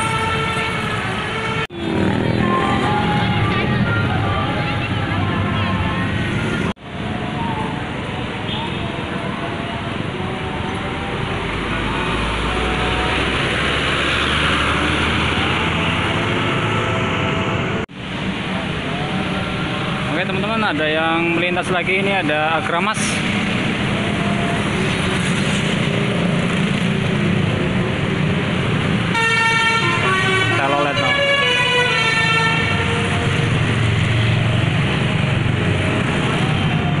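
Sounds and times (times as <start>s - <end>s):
bus musical horn: 0.0s - 6.3s, 8.4s - 9.1s, 29.1s - 33.8s
heavy vehicle passing: 0.0s - 7.3s, 9.4s - 20.9s, 29.9s - 37.0s
traffic roar of tyres and engines: 0.0s - 37.0s.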